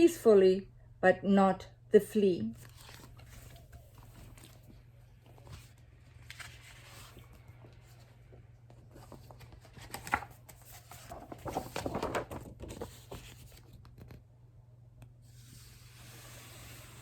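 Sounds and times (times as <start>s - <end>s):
paper pages rustling: 2.6s - 14.2s.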